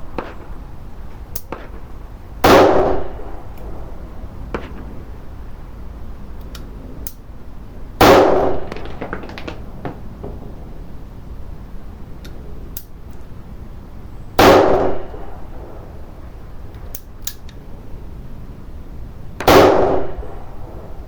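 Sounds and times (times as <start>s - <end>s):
revolver shots with ringing echo: 1.4s - 5.1s, 8.0s - 10.6s, 14.4s - 15.9s, 19.4s - 20.9s.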